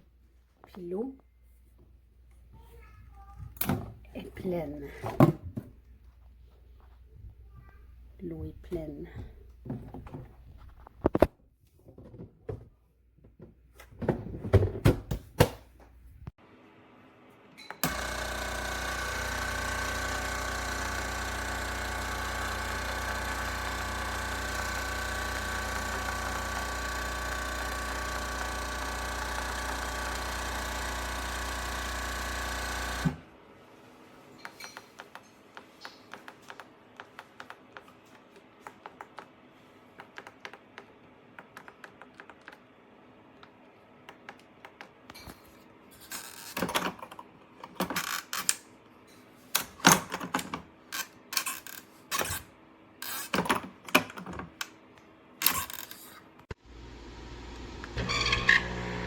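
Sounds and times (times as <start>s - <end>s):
espresso machine humming: 17.8s - 33.3s, 56.6s - 59.0s.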